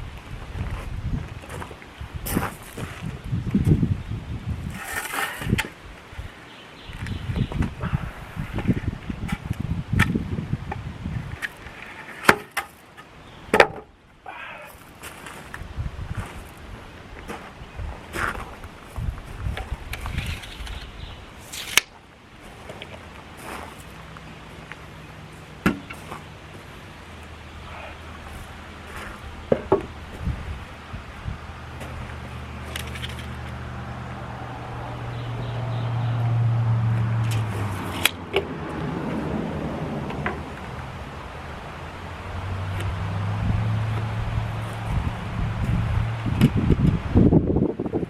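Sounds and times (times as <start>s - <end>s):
wind on microphone: 0.0s - 11.8s, 15.4s - 21.4s, 27.6s - 48.0s
wooden boards knocking: 13.5s - 13.9s, 25.6s - 26.0s, 29.5s - 30.0s
wooden knocks from lumber: 29.5s - 29.9s.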